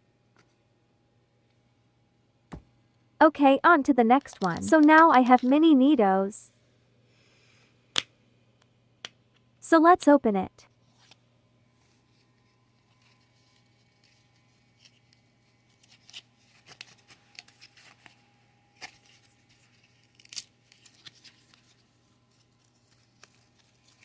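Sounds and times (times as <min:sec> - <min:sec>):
packaging crinkles and tearing: 0:12.7 - 0:24.0.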